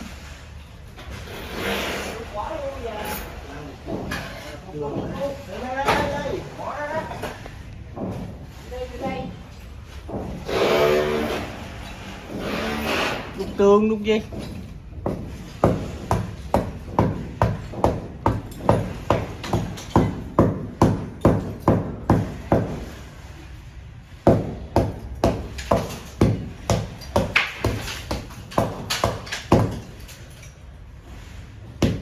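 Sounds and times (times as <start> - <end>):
hammer striking chisel into wall: 14.3 - 23.0, 24.2 - 30.1, 31.8 - 32.0.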